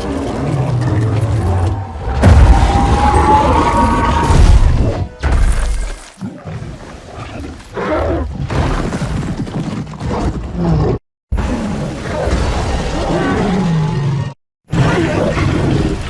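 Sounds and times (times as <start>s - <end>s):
giant ape roaring: 0.0s - 4.9s.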